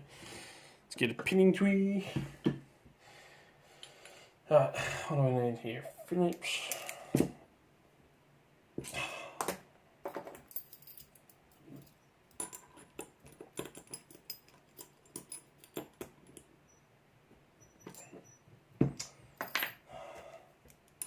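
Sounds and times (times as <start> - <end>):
metal tools clicking and clinking: 10.1 - 16.5
padlock rattle: 10.4 - 16.5.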